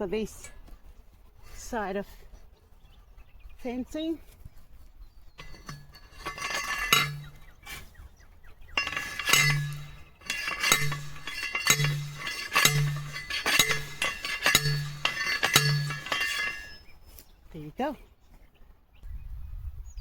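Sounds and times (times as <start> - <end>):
metal picket driver clanking: 5.4 - 7.9, 8.8 - 16.8.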